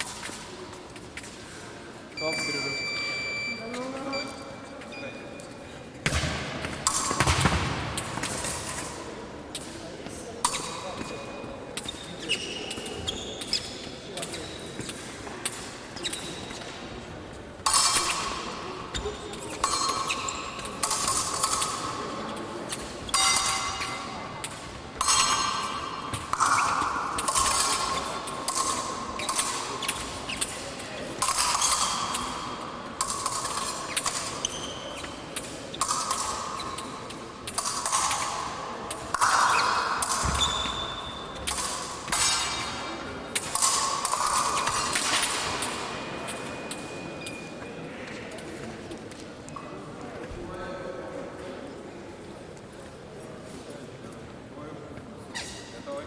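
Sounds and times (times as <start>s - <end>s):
fencing blades clashing: 0.0s - 1.6s, 6.1s - 9.8s, 10.4s - 11.2s, 11.8s - 16.9s, 17.6s - 47.6s.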